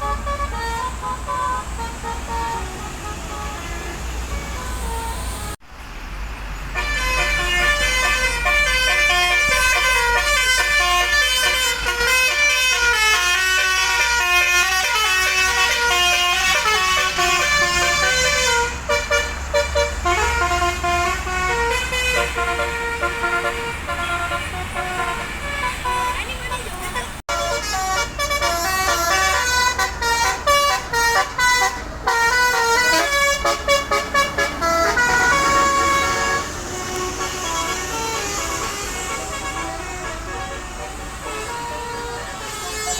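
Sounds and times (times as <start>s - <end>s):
bus musical horn tune: 0.0s - 5.6s, 6.7s - 42.9s.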